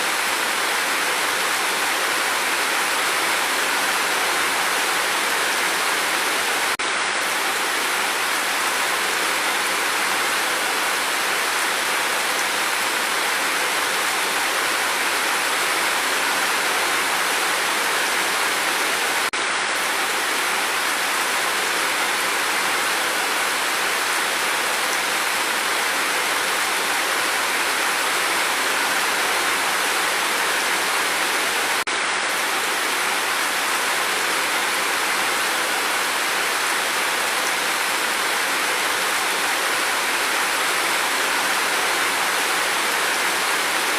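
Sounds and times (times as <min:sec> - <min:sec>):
steady rain hiss: 0:00.0 - 0:43.9.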